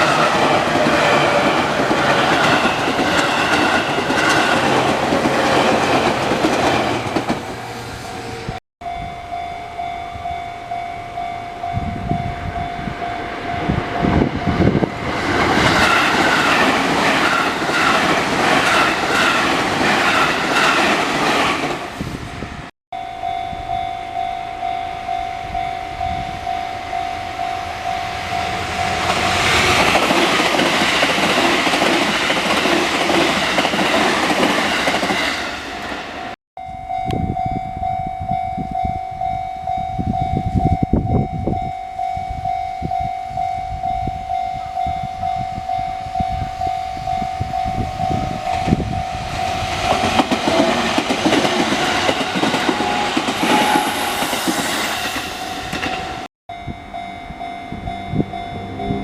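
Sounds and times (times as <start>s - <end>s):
level crossing alarm ringing: 8.2s - 14.9s, 22.9s - 32.0s, 36.6s - 59.0s
train wheels clattering over rails: 29.0s - 35.7s, 49.8s - 56.3s.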